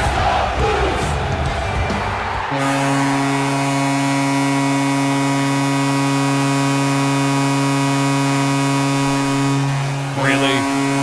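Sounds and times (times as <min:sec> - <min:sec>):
goal horn long low blast: 0:02.3 - 0:11.0.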